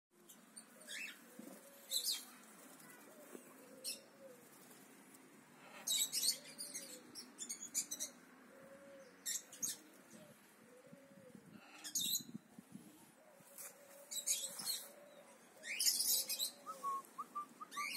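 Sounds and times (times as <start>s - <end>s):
soft low bird call: 13.3s - 17.9s.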